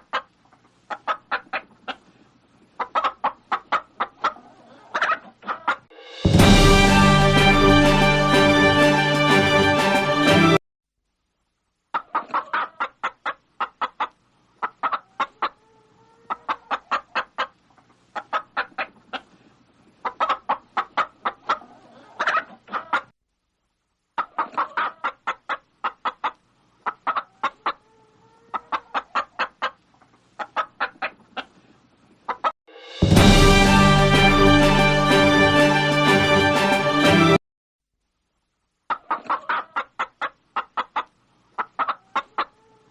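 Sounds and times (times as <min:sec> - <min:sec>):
hen clucking: 0:00.0 - 0:05.9, 0:11.9 - 0:23.1, 0:24.2 - 0:32.5, 0:38.9 - 0:42.9.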